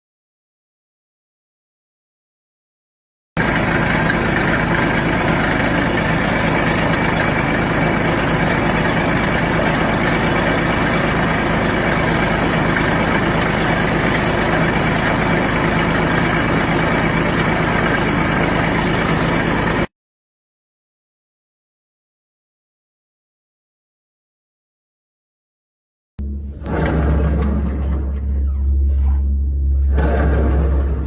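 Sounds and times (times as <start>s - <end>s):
tractor engine running: 3.4s - 19.9s, 26.2s - 31.0s.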